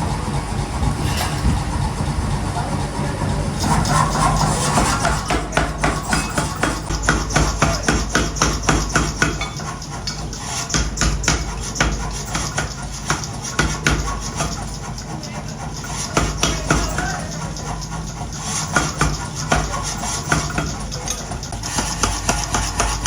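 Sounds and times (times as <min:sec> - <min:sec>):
low machine hum: 0:00.0 - 0:23.0.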